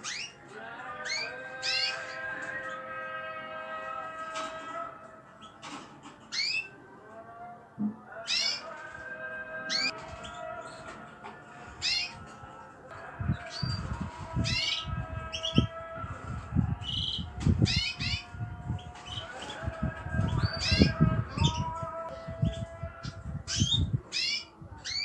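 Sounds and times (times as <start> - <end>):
small birds chirping: 0.0 - 2.9, 5.4 - 6.8, 8.2 - 8.8, 11.7 - 12.4, 13.0 - 15.8, 16.4 - 25.0.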